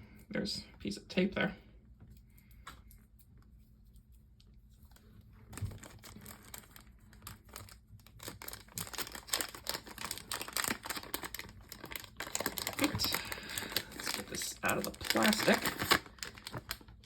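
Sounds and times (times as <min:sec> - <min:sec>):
plastic packaging crinkling: 0:04.7 - 0:17.0.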